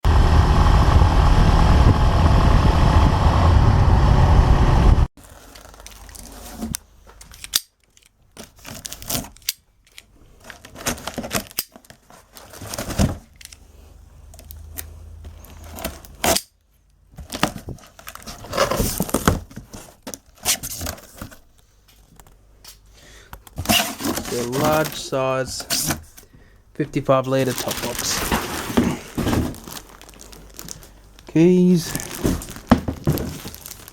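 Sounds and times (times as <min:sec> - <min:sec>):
loud steady sound: 0:00.0 - 0:05.1
packaging crinkling and tearing: 0:05.2 - 0:13.6, 0:17.2 - 0:21.7, 0:23.5 - 0:26.3, 0:27.0 - 0:33.9.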